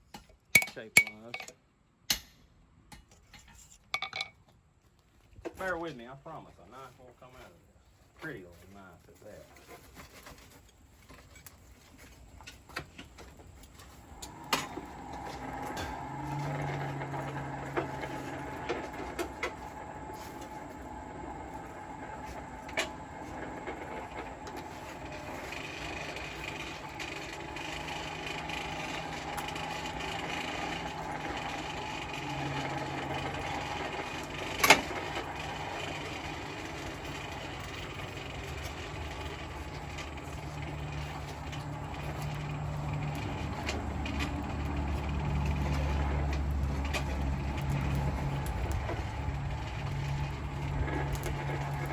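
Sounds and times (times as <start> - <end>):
blower humming with air rush: 13.8 - 51.9.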